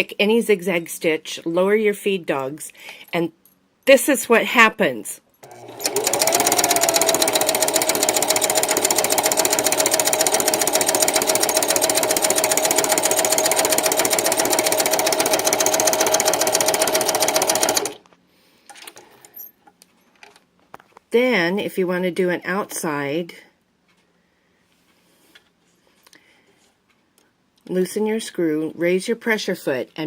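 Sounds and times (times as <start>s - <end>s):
sewing machine running: 5.4s - 18.0s.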